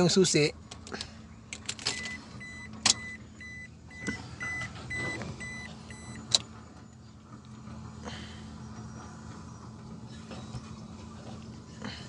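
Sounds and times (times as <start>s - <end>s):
dashboard warning buzzer beeping: 2.0s - 6.5s.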